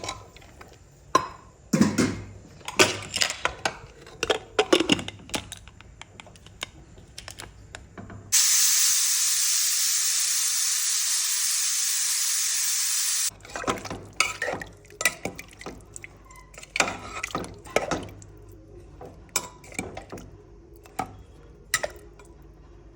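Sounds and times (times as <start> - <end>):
loud steady hiss: 8.3 - 13.3.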